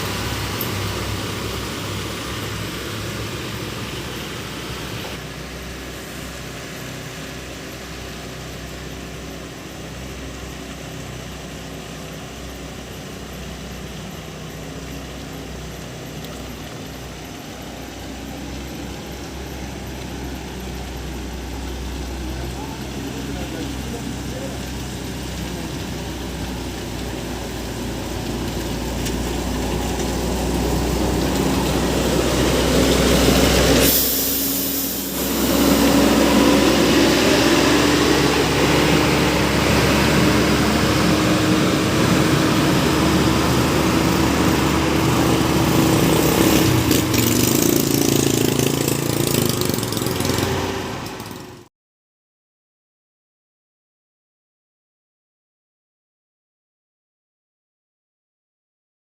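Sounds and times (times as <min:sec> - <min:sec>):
road noise: 0:00.0 - 0:51.7
vehicle engine running: 0:00.0 - 0:51.7.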